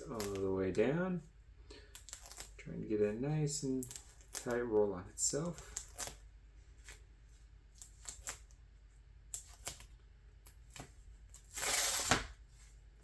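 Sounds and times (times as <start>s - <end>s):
duct tape crackling: 0.0s - 1.0s.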